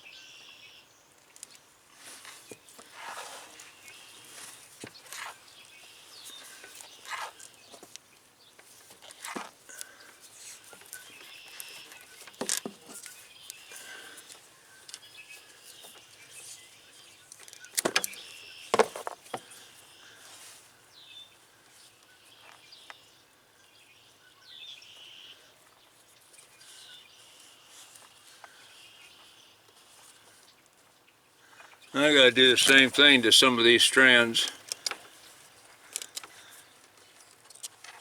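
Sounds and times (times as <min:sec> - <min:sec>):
birds chirping: 0:31.4 - 0:37.3.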